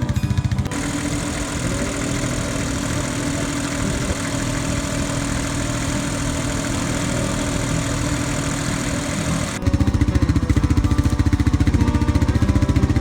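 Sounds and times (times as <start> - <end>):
engine running steadily: 0.0 - 13.0.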